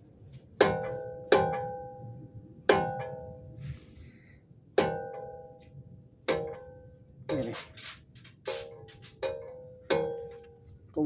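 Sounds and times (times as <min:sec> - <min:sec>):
metallic clanks from car wheel: 0:04.8 - 0:10.6.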